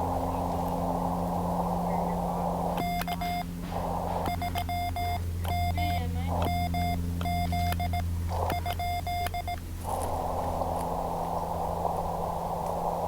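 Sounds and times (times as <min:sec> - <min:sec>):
receiver static hiss: 0:00.0 - 0:13.0
morse code tone: 0:04.2 - 0:09.6.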